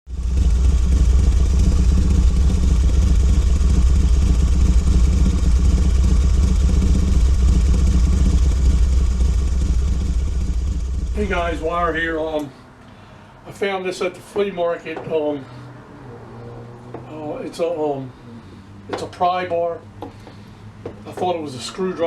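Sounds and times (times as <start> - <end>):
low mechanical rumble: 0.1 - 13.6.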